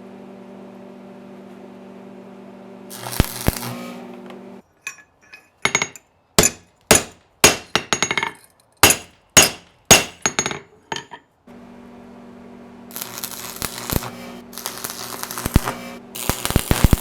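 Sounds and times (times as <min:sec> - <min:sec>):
hammer striking steel on anvil: 0:04.9 - 0:11.2.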